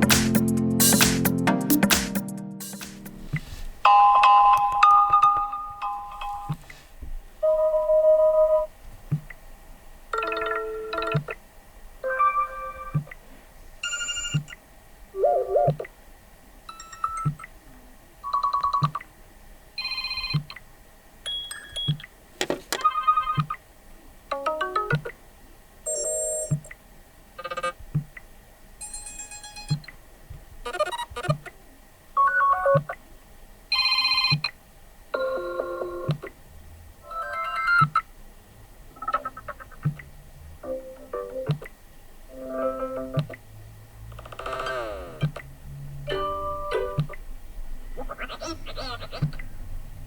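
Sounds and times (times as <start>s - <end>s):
electronic ringtone melodies: 10.2s - 11.2s.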